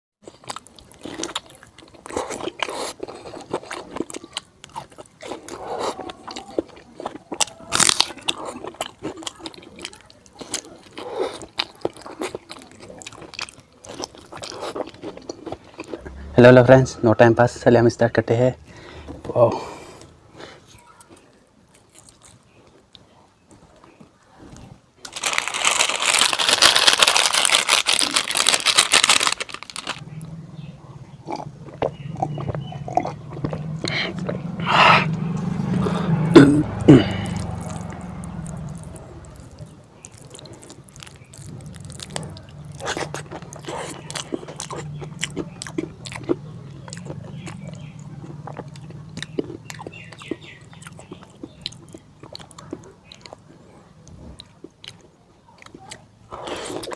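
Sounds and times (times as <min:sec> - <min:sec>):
small crunches: 0:00.2 - 0:16.1, 0:21.0 - 0:30.2, 0:37.1 - 0:56.9
chewing and wet smacking: 0:00.2 - 0:16.3, 0:20.8 - 0:23.1, 0:31.2 - 0:36.1, 0:36.7 - 0:56.9
loud dense noise: 0:25.0 - 0:50.7.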